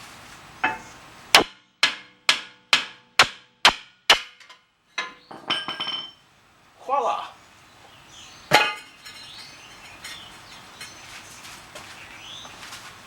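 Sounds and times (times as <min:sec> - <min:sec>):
hammer striking metal: 0:00.6 - 0:06.2, 0:08.5 - 0:08.9.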